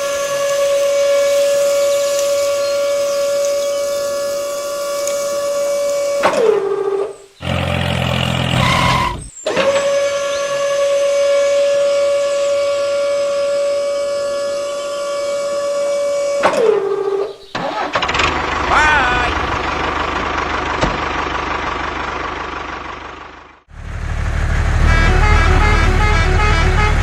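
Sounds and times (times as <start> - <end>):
low engine-like rumble: 18.2 - 27.0.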